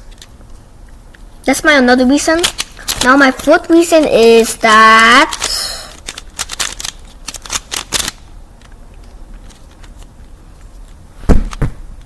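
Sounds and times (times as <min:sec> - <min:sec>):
heavy thumps: 0:11.2 - 0:12.0.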